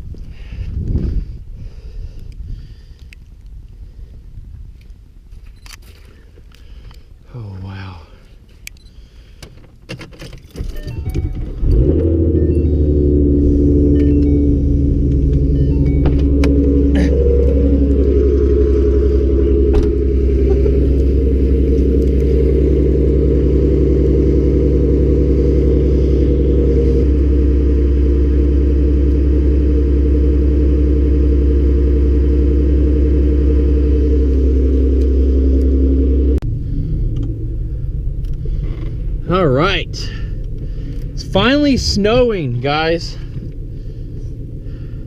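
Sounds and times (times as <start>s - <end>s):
car engine idling: 10.9s - 45.0s.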